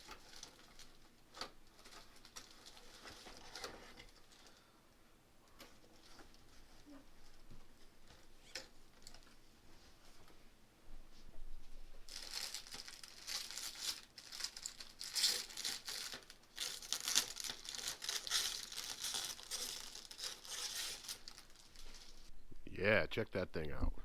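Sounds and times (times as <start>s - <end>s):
plastic packaging crinkling: 0.0s - 4.6s, 12.0s - 22.3s.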